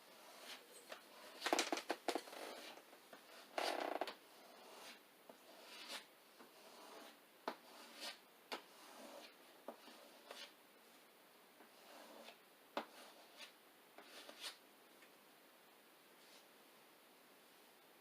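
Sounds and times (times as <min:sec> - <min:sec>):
squeegee scraping on glass: 0:00.1 - 0:10.5.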